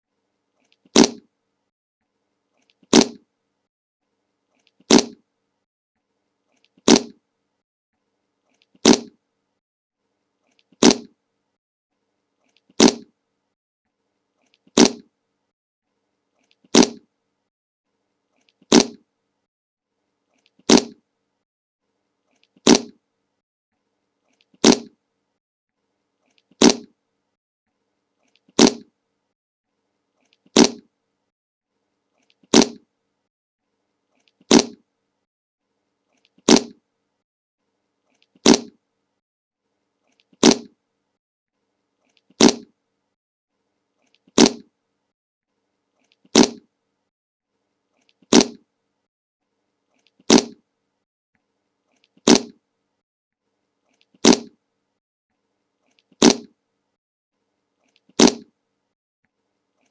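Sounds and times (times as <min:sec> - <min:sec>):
fart sound effect: 0:00.9 - 0:01.3, 0:02.8 - 0:03.2, 0:04.9 - 0:05.2, 0:06.8 - 0:07.2, 0:08.8 - 0:09.2, 0:10.8 - 0:11.1, 0:12.8 - 0:13.1, 0:14.8 - 0:15.1, 0:16.7 - 0:17.0, 0:18.7 - 0:19.0, 0:20.7 - 0:21.0, 0:22.6 - 0:23.0, 0:24.6 - 0:25.0, 0:26.6 - 0:26.9, 0:28.6 - 0:28.9, 0:30.5 - 0:30.9, 0:32.5 - 0:32.8, 0:34.5 - 0:34.8, 0:36.5 - 0:36.8, 0:38.4 - 0:38.8, 0:40.4 - 0:40.7, 0:42.4 - 0:42.7, 0:44.4 - 0:44.7, 0:46.4 - 0:46.6, 0:48.3 - 0:48.6, 0:50.3 - 0:50.6, 0:52.2 - 0:52.5, 0:54.2 - 0:54.6, 0:56.2 - 0:56.5, 0:58.2 - 0:58.5.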